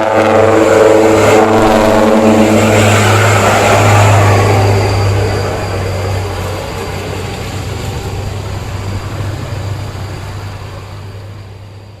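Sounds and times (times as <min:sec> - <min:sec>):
diesel truck engine: 0:00.0 - 0:12.0
road noise: 0:00.0 - 0:12.0.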